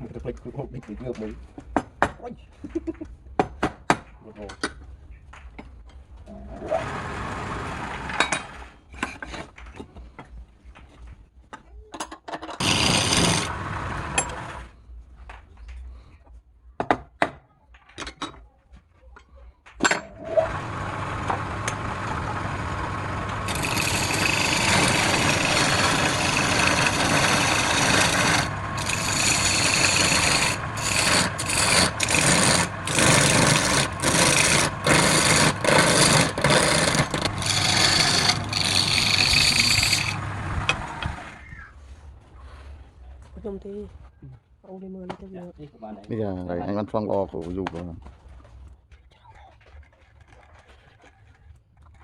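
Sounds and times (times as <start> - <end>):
tool scraping spinning wood: 12.6 - 14.7, 20.0 - 41.5
knocks and handling sounds: 47.0 - 52.0.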